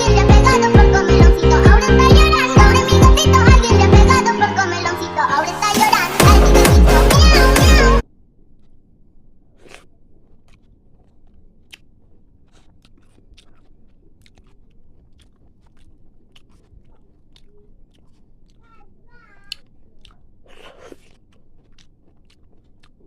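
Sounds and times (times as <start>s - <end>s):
background music: 0.0s - 8.0s
person chewing crunchy food: 9.4s - 23.0s.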